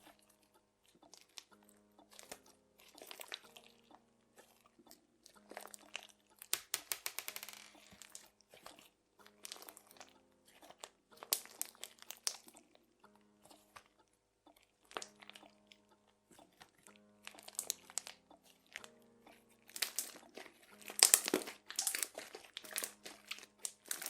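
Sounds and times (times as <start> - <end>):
slime crackling and popping: 0.0 - 24.0.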